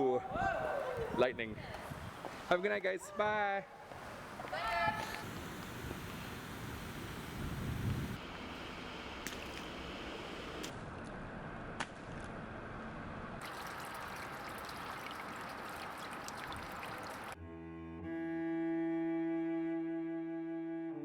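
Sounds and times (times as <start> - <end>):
steady rain falling: 3.9 - 8.2
sharp drips: 13.4 - 17.4.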